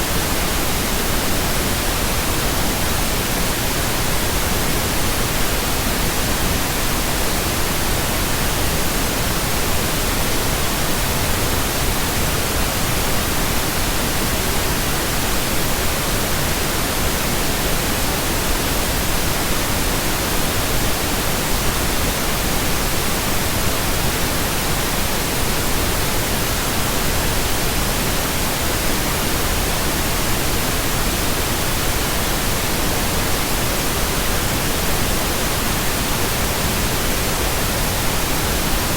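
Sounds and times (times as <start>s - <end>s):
pink noise hiss: 0.0s - 38.9s.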